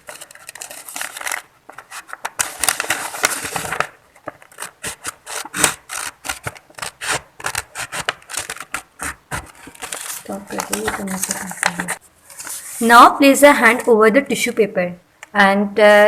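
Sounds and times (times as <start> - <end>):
scissors cutting paper: 0.0 - 12.6.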